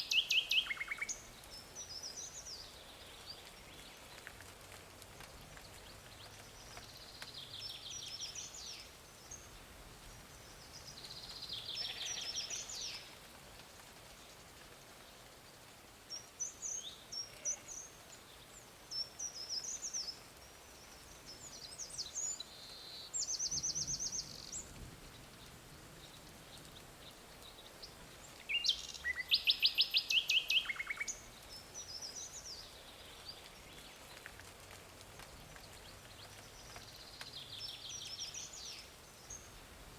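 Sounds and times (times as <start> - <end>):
faint background noise: 0.0 - 39.9.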